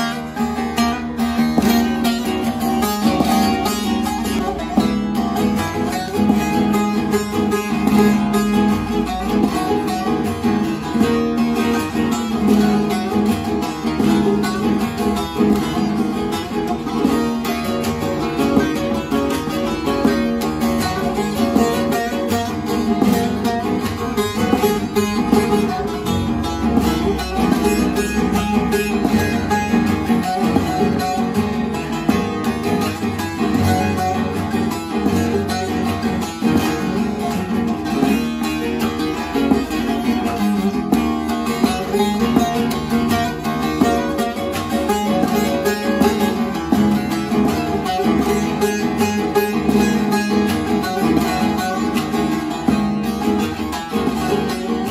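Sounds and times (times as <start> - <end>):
long-necked lute fast plucking: 0.0 - 54.9.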